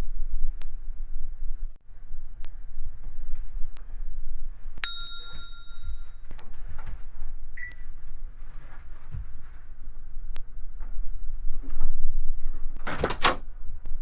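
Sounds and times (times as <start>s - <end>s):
bell-like electronic ring: 4.8s - 6.2s.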